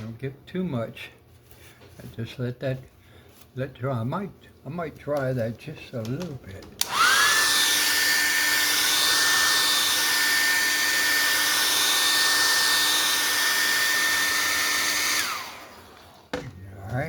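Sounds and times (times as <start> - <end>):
hair dryer blowing: 6.8 - 16.5.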